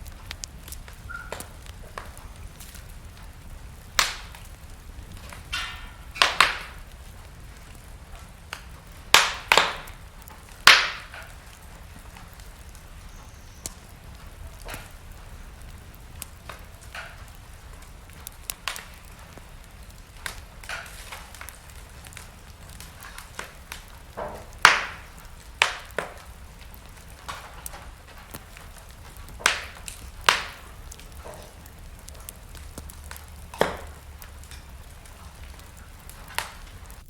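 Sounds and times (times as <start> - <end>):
wood fire crackling: 0.0 - 37.0.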